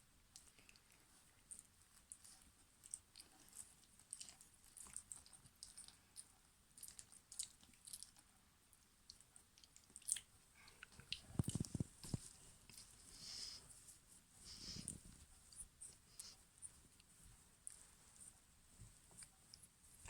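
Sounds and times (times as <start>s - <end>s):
puppies chewing: 0.4s - 8.3s, 9.1s - 13.6s.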